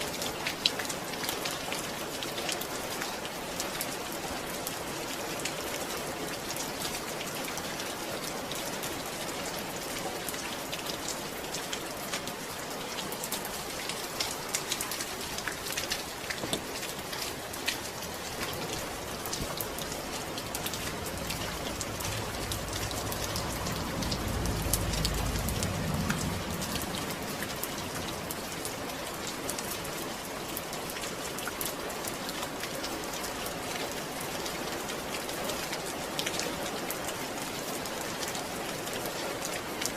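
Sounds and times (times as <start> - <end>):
steady rain falling: 0.0 - 39.9
low rumble: 19.7 - 28.7.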